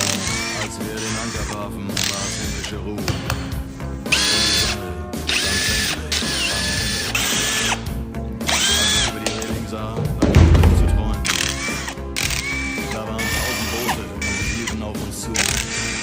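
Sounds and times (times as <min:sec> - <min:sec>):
power drill motor whine: 0:00.0 - 0:02.8, 0:04.1 - 0:09.5, 0:11.2 - 0:16.0
heavy low rumble: 0:09.9 - 0:11.6.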